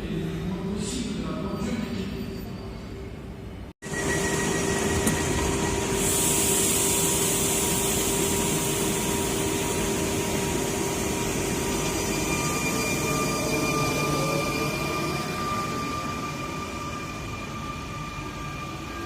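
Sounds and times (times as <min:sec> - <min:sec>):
train whine: 0:01.8 - 0:19.0
electric train rolling past: 0:02.3 - 0:19.0
high hiss: 0:05.8 - 0:10.8.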